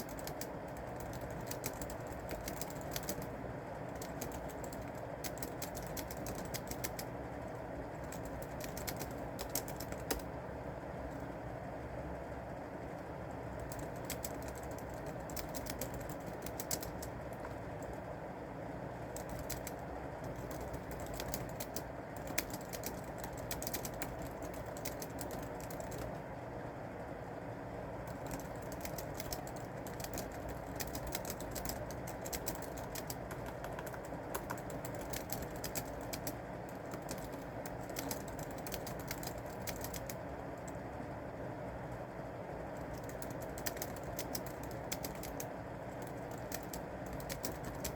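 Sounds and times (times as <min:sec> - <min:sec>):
keyboard key clicks: 0:28.2 - 0:40.2.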